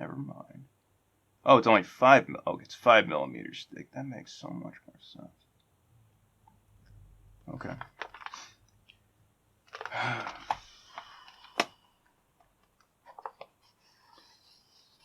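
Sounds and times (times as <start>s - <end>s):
packaging rustle: 7.7s - 8.6s, 9.6s - 11.8s.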